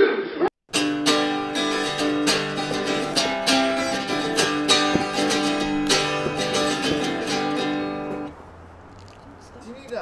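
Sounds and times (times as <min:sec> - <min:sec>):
acoustic guitar strumming: 0:00.7 - 0:08.4.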